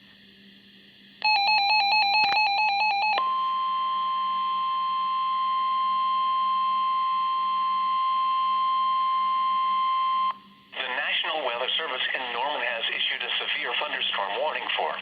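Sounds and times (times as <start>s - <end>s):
warbling electronic alert alarm: 1.2s - 10.3s
steady warning alarm tone: 1.2s - 10.5s.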